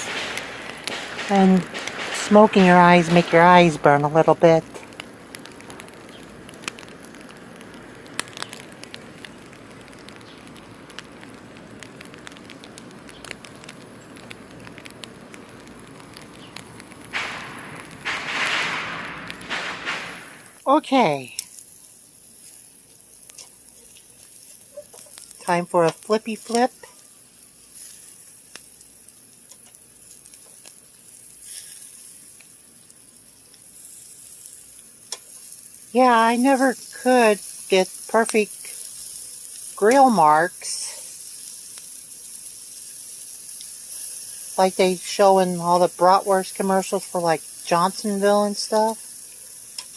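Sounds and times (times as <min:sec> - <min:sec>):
fat crackling and popping: 0:00.0 - 0:49.9
sausages sizzling on a grill: 0:00.0 - 0:49.9.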